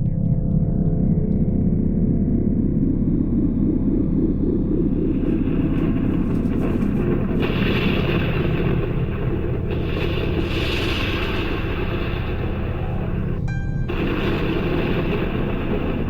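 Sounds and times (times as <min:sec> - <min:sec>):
rumble of thunder: 0:04.3 - 0:16.0
high hiss: 0:05.1 - 0:16.0.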